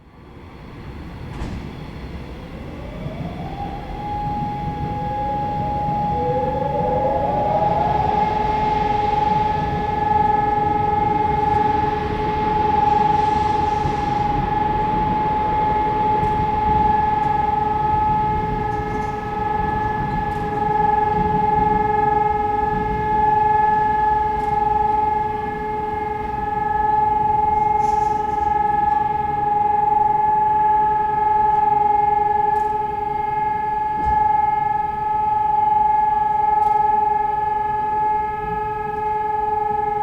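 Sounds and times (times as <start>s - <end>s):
siren steady tone: 2.2s - 40.0s.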